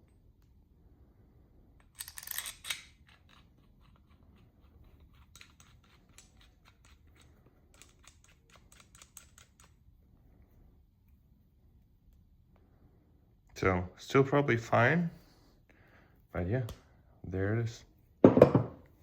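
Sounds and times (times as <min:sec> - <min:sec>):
metal parts clicking and tapping: 0:01.8 - 0:09.8.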